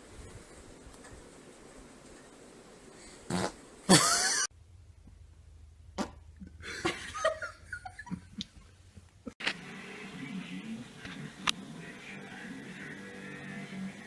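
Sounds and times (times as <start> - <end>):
farts: 3.3 - 4.0.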